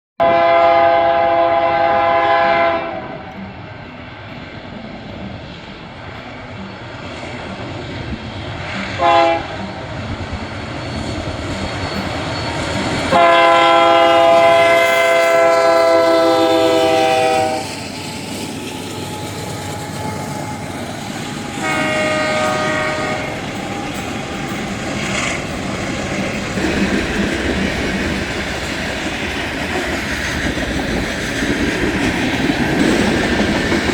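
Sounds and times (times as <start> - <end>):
locomotive air horn blasts: 0.2 - 3.3, 9.0 - 9.7, 13.0 - 18.1, 19.0 - 25.4
freight train rumble: 0.2 - 33.9
train wheels clickety-clack: 0.8 - 33.9.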